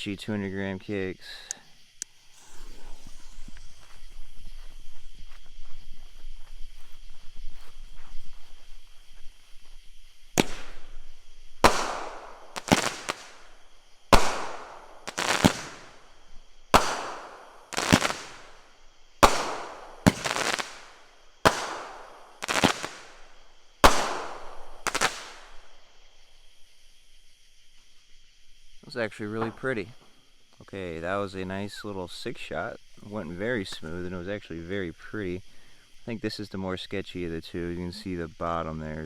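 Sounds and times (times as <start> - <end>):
firework bangs: 2.3 - 4.8, 10.2 - 25.8
firework launch thumps: 2.3 - 4.8, 10.3 - 16.1, 16.7 - 18.6, 19.2 - 25.7.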